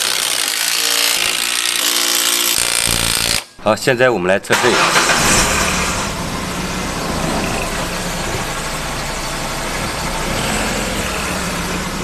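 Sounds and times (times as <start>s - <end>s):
car engine running: 4.6s - 12.0s.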